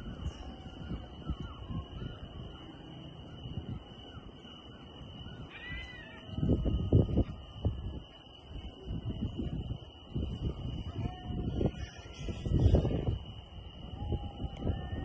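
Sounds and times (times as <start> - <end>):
crow-like animal call: 5.5 - 6.4.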